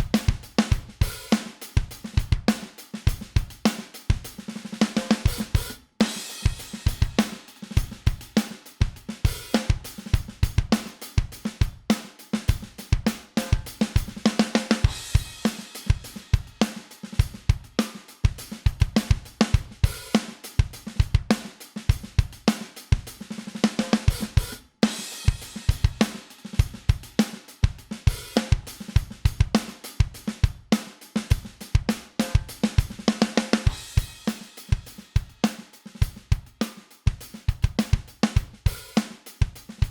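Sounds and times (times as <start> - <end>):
cymbals: 0.0 - 39.9
hi-hats: 0.0 - 39.9
snare drum: 0.0 - 39.9
kick drum: 39.6 - 39.9.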